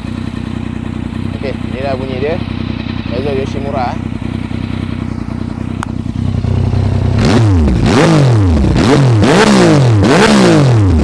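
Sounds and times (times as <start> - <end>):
motorcycle engine idling and revving: 0.0 - 11.0.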